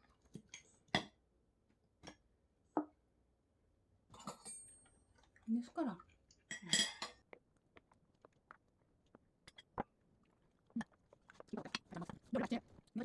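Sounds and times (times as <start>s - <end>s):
chewing and mouth sounds: 6.3s - 13.0s.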